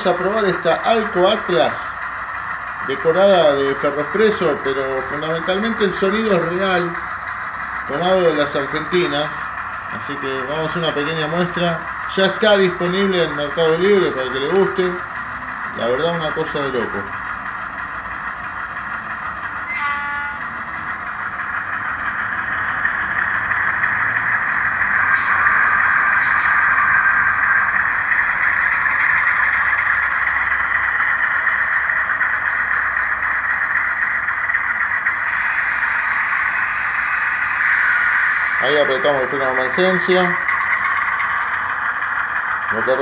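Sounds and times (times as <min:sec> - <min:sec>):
diesel engine sound from small speaker: 0:00.0 - 0:43.0
model locomotive horn toot: 0:19.6 - 0:20.8, 0:24.5 - 0:25.6, 0:35.2 - 0:40.1.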